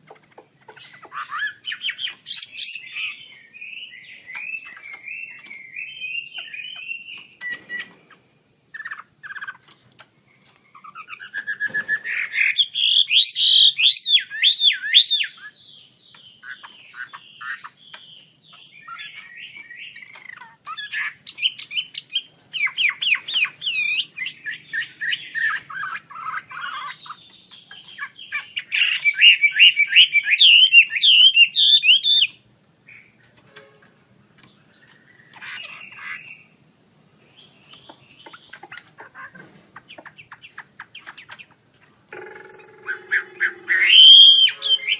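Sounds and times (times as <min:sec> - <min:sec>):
bird singing whistled phrases: 0:01.3 - 0:07.9, 0:42.5 - 0:44.9.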